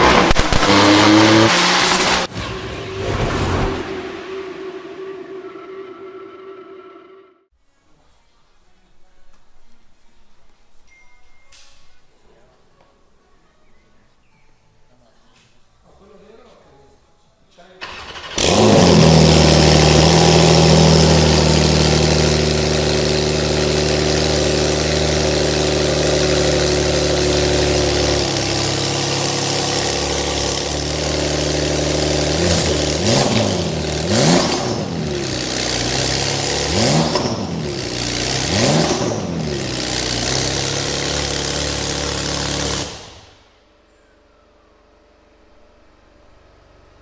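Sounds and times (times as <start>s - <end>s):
engine revving: 0.0s - 7.4s, 17.8s - 43.4s
car engine idling: 17.9s - 43.4s.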